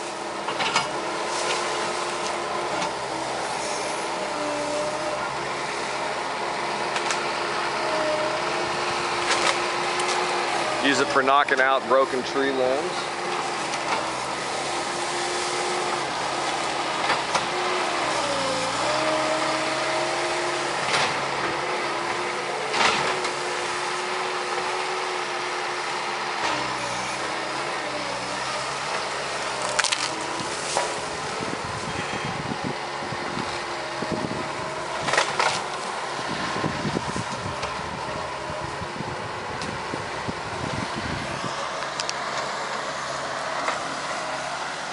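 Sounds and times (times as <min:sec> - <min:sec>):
diesel engine lugging: 0:00.0 - 0:44.9
wood snapping and splintering: 0:29.4 - 0:30.9.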